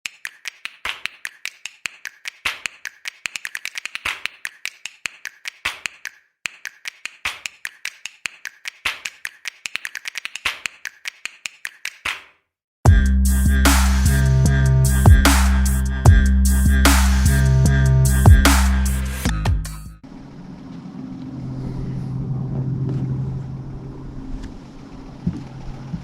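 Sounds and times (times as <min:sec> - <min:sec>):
rapid sharp clicks: 0:00.0 - 0:12.2.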